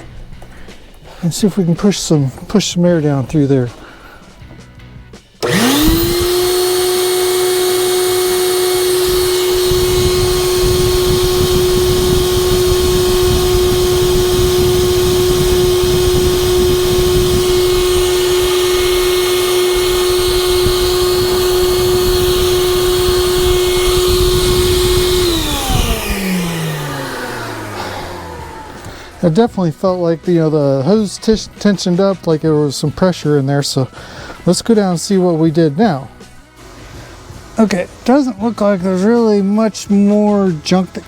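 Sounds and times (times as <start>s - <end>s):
vacuum motor whining: 5.4s - 29.6s, 36.2s - 37.8s.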